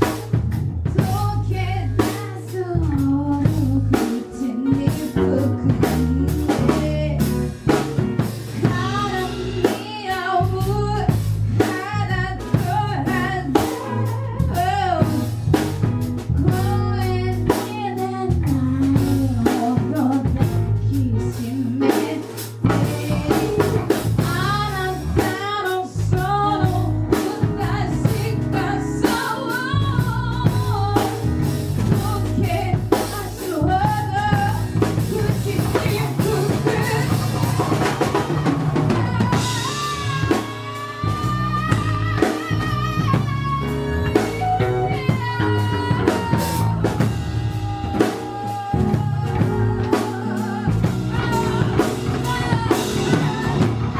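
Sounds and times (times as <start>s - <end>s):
band with drum kit: 0.0s - 53.9s
person singing with vibrato: 1.0s - 7.4s, 8.6s - 15.4s, 16.4s - 31.2s, 31.8s - 53.9s.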